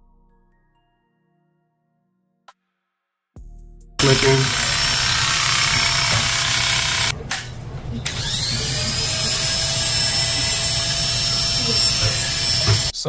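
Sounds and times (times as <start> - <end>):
hair clipper motor whine: 4.0 - 13.0.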